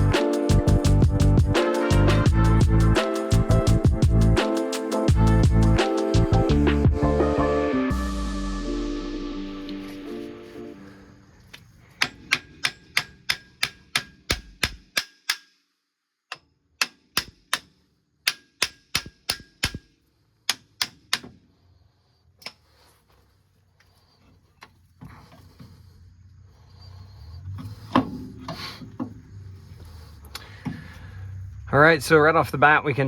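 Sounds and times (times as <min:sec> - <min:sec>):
ratchet wrench clicking: 0:12.0 - 0:15.6.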